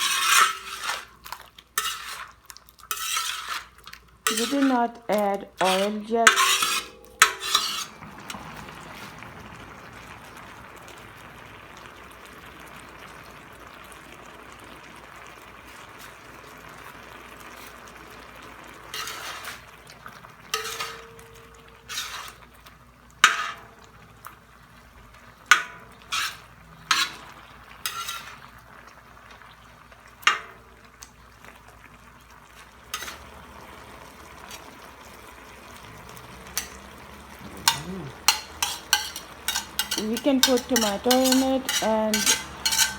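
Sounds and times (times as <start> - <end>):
utensil scraping and knocking pan: 0.0 - 1.2, 1.8 - 2.3, 2.9 - 3.7, 4.3 - 8.6, 18.9 - 19.7, 20.5 - 22.5, 23.2 - 23.8, 25.5 - 28.5, 32.9 - 33.3, 36.4 - 36.9, 37.6 - 42.9
chicken sizzling in a pan: 0.0 - 42.9.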